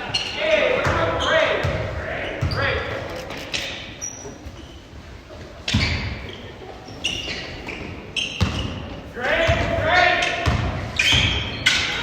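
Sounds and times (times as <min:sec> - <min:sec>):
sneaker squeaks: 0:00.0 - 0:12.0.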